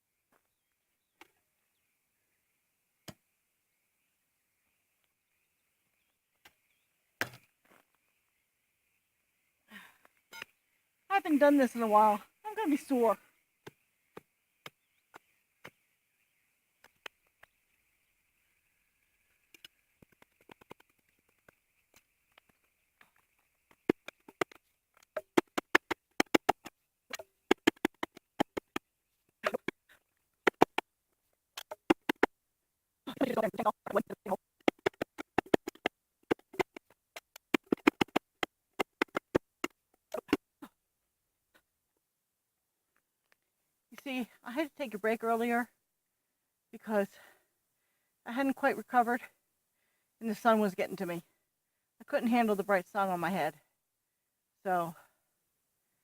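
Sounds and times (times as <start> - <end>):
digging tool chopping rocky ground: 7.2 - 7.5.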